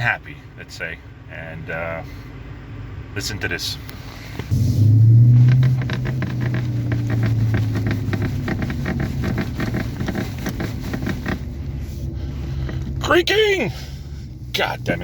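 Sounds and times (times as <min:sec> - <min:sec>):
low rumble of car: 0:00.0 - 0:15.0
car seat creaking: 0:04.2 - 0:11.8.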